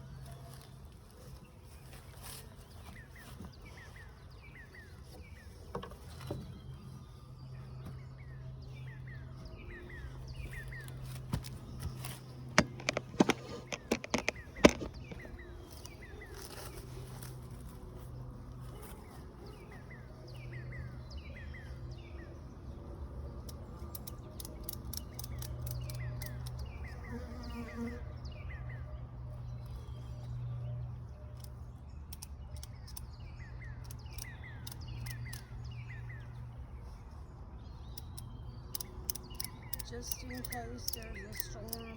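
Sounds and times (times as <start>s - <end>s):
bird chirping: 0.0s - 41.9s
sharp clicks and knocks: 11.3s - 15.4s.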